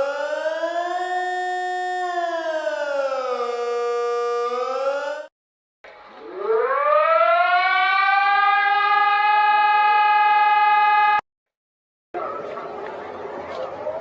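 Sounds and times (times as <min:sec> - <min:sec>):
warning siren winding up: 0:00.0 - 0:05.3, 0:06.1 - 0:11.2.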